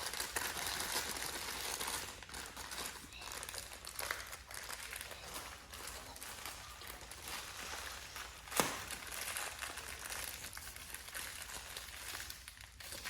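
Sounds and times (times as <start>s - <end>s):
plastic packaging crinkling: 0.0s - 13.0s
sharp plastic snap: 8.5s - 8.9s.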